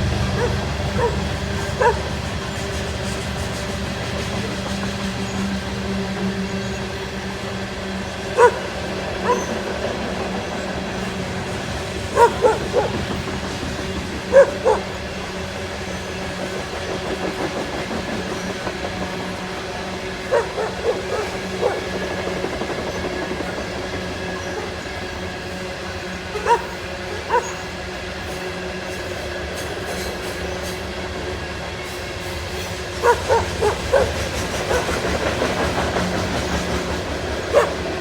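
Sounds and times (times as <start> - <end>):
coal train rolling past: 0.0 - 38.0
dog barking: 0.3 - 2.3, 8.3 - 9.8, 12.1 - 13.3, 14.2 - 15.0, 20.2 - 22.3, 24.2 - 24.9, 26.2 - 27.7, 33.0 - 35.5, 37.4 - 38.0.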